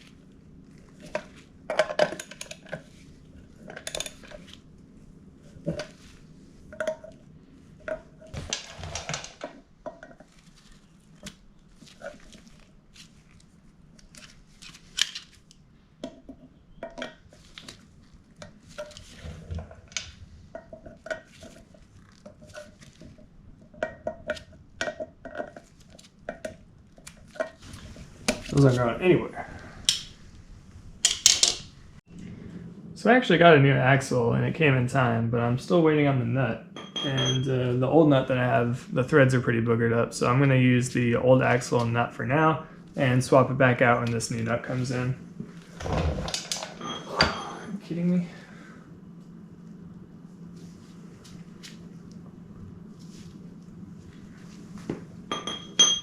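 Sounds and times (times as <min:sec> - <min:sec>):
metal tools clinking on metal: 0:36.8 - 0:37.5, 0:55.3 - 0:56.0.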